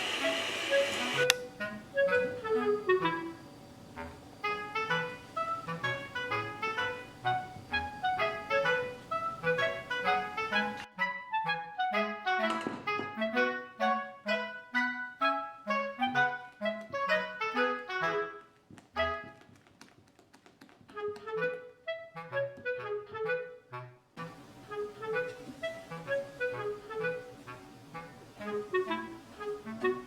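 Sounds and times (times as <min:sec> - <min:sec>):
light bouncy background music: 0:00.3 - 0:19.6, 0:20.7 - 0:30.0.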